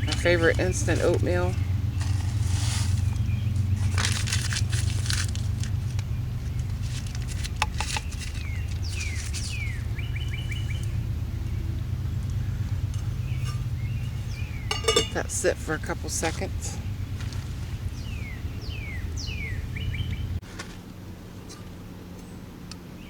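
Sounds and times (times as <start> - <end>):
rustling: 0.0 - 9.9
birds chirping: 0.0 - 23.0
steady low rumble: 0.0 - 23.0.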